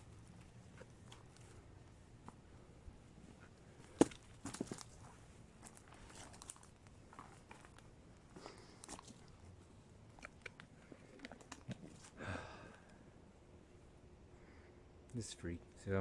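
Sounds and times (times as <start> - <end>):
faint rustling and crackling: 0.0 - 12.2.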